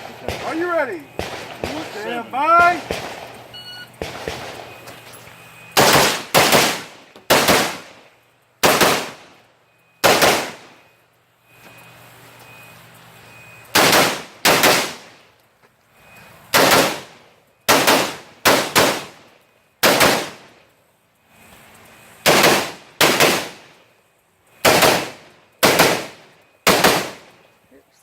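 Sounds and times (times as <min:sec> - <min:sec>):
rifle shots with echo: 0:00.2 - 0:03.3, 0:04.0 - 0:04.8, 0:05.8 - 0:08.0, 0:08.6 - 0:09.3, 0:10.0 - 0:10.8, 0:13.7 - 0:15.2, 0:16.5 - 0:20.6, 0:22.2 - 0:23.7, 0:24.6 - 0:27.3.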